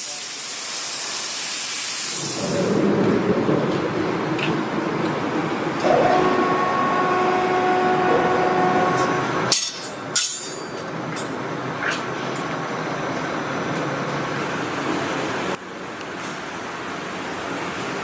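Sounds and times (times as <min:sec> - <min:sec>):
factory machinery running: 0:00.0 - 0:18.0
faint steady tones: 0:05.8 - 0:09.6.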